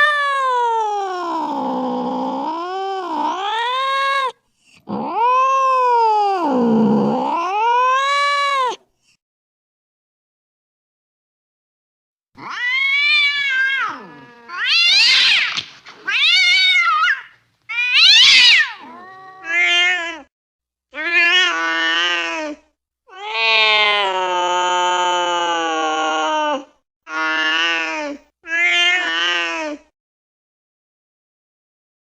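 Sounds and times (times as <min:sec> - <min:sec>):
angry cat yowling: 0:00.0 - 0:08.8, 0:12.4 - 0:20.3, 0:23.1 - 0:27.8.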